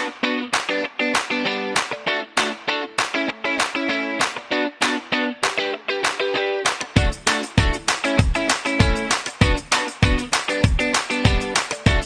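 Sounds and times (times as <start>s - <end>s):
guitar chords strummed: 0.0s - 12.0s.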